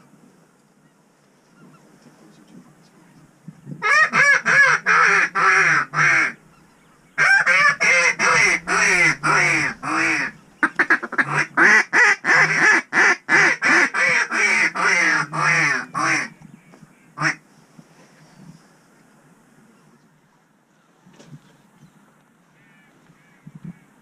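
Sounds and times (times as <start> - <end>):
goose-like honking: 7.2 - 16.4, 17.0 - 17.4, 22.6 - 23.9.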